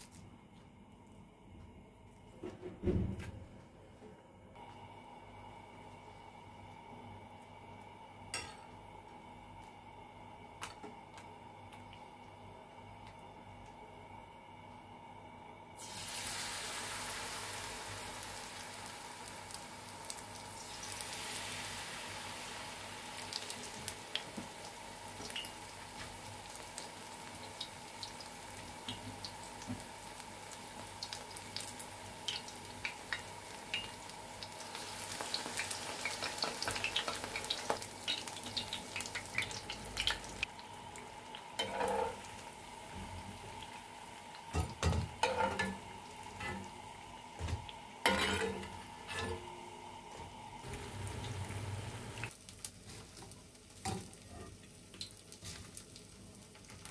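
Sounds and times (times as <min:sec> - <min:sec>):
food sizzling in hot oil: 0:15.8 - 0:49.8, 0:50.6 - 0:56.9
oil crackles and pops: 0:23.2 - 0:41.6, 0:52.2 - 0:56.9.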